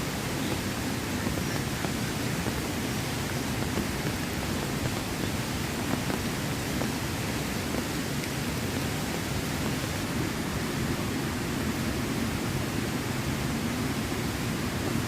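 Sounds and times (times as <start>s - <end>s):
faint drip ticks: 0.0s - 10.2s
heavy rain hiss: 0.0s - 15.0s.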